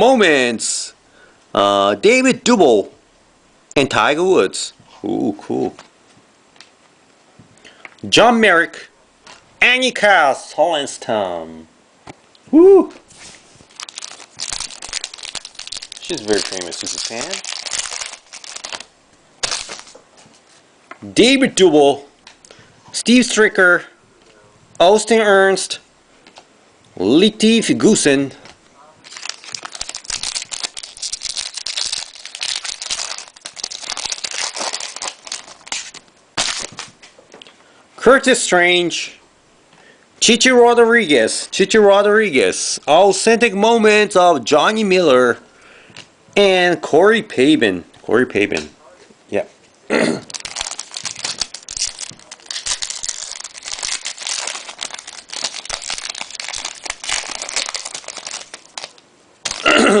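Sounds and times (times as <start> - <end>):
cards and wrapper crinkling: 13.1 - 20.6, 29.0 - 37.0, 50.2 - 60.0.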